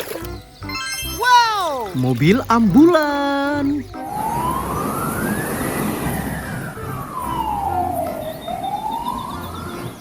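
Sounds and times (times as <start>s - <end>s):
ambulance siren wailing: 3.9s - 10.0s.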